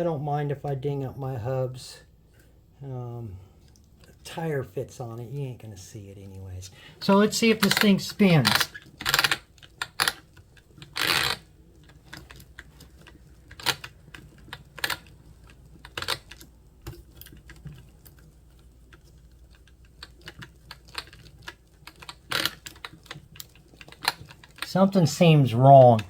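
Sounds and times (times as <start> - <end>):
toy truck wheel hub clicking: 7.6 - 18.3, 18.9 - 24.7.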